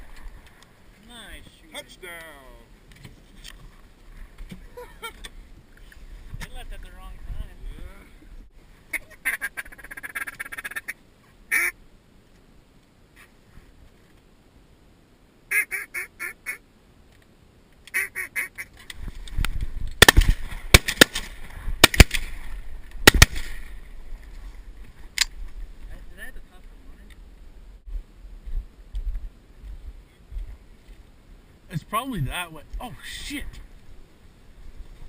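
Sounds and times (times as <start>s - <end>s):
duck quacking: 8.9s - 11.8s
rustling noise: 18.6s - 31.2s, 33.4s - 35.0s
sharp loud cracks: 19.9s - 23.8s.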